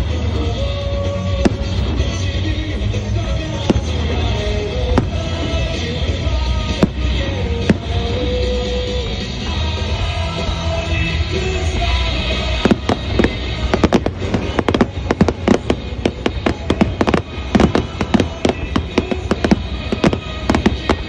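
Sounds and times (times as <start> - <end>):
fireworks bangs and crackles: 0.0 - 21.0
music playing: 0.0 - 21.0.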